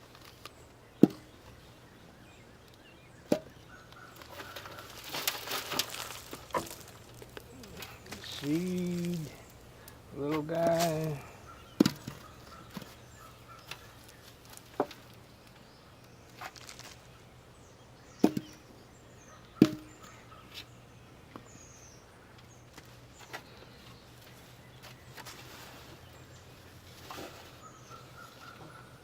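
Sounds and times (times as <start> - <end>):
potatoes knocking and thudding: 1.0 - 1.4, 4.2 - 13.0, 18.2 - 18.6, 19.6 - 20.0.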